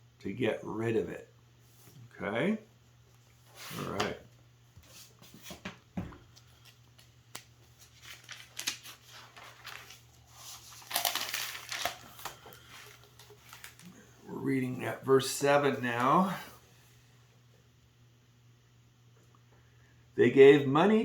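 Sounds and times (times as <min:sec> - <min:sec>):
paper pages rustling: 0:06.3 - 0:14.0
crinkling rustle: 0:06.3 - 0:14.1.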